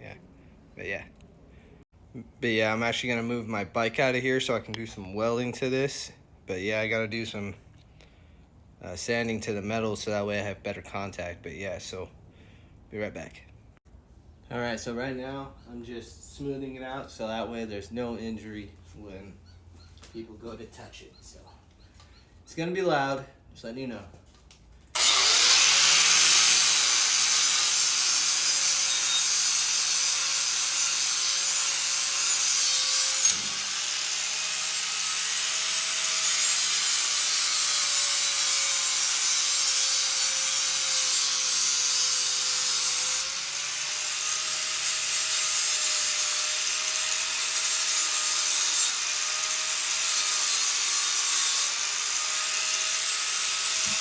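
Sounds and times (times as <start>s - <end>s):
power tool sanding steel: 25.0s - 54.0s.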